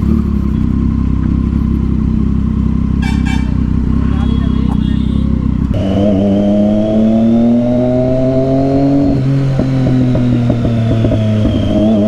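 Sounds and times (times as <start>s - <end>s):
motorcycle engine revving: 0.0s - 12.0s
exhaust crackling and popping: 8.1s - 12.0s.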